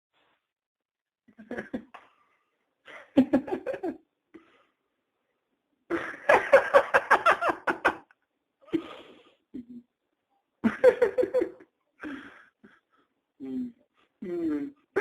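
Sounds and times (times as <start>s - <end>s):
man laughing hard: 5.9s - 8.1s.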